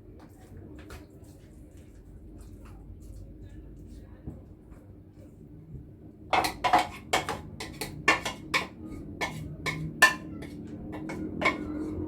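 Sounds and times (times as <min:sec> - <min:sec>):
chicken clinking against metal tray: 0:06.3 - 0:12.0.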